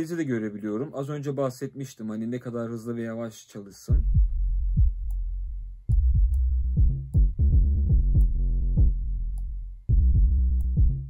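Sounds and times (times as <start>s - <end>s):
deep bass: 3.9s - 11.0s
electronic drum-machine beat: 3.9s - 11.0s.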